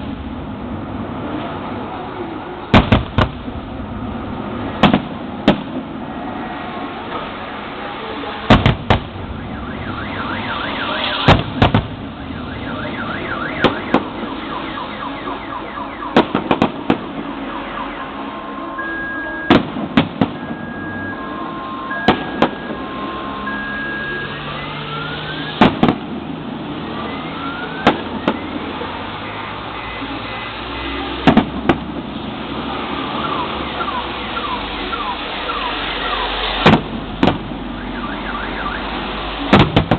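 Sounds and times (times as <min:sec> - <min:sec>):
fireworks bursting: 0:02.6 - 0:06.2, 0:08.4 - 0:18.2, 0:18.9 - 0:39.9
car alarm: 0:09.3 - 0:11.4, 0:12.2 - 0:16.5, 0:17.4 - 0:25.6, 0:33.1 - 0:36.4, 0:37.8 - 0:38.9.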